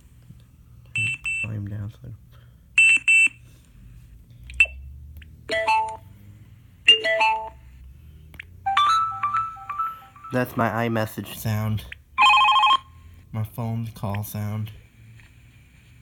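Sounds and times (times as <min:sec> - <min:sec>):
electronic alert tones: 0:08.7 - 0:10.6.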